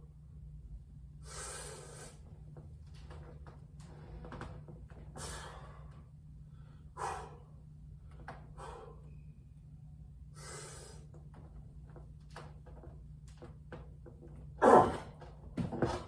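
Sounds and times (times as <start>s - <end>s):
steady low hum: 0.0s - 16.0s
man breathing hard: 1.2s - 2.3s, 5.2s - 7.6s, 8.5s - 9.2s, 10.3s - 11.1s.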